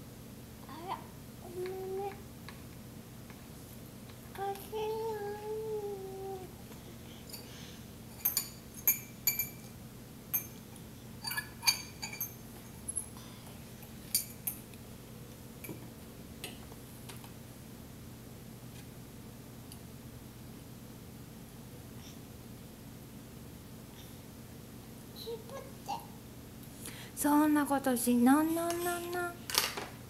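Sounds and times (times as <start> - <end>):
steady low hum: 0.0 - 30.0.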